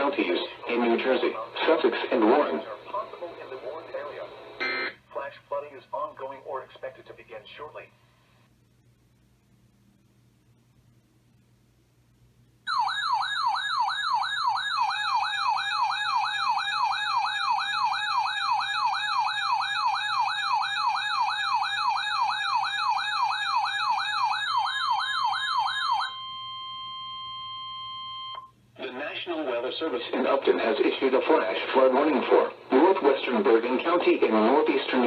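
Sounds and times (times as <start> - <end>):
electronic siren warbling: 12.7 - 26.7.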